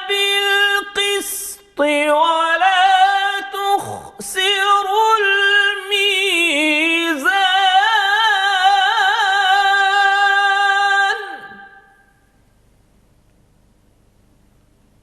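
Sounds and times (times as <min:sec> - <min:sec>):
person chanting recitation: 0:00.0 - 0:11.8.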